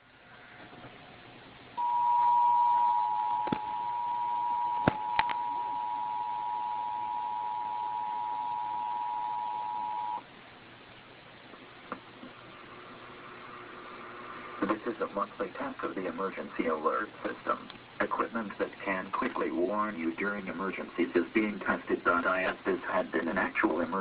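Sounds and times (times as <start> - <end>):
two-tone alert signal: 1.8 - 10.2.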